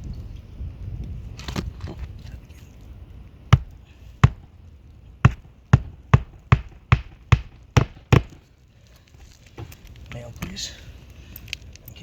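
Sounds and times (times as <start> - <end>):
hammer striking nail in shingle: 3.5 - 4.6, 5.2 - 8.4.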